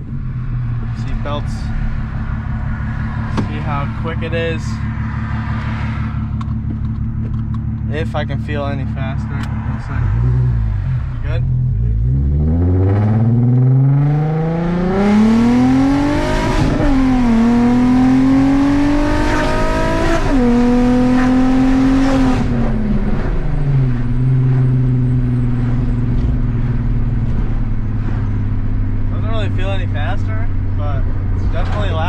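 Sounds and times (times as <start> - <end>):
car engine revving hard: 9.0 - 25.7.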